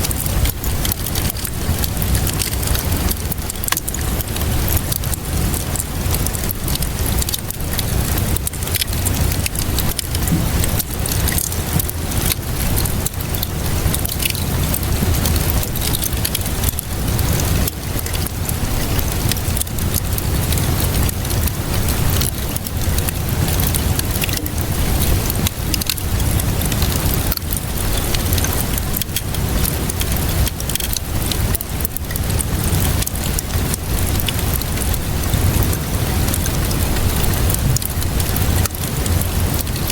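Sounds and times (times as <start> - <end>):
wood fire crackling: 0.0 - 39.9
low rumble: 21.6 - 27.2.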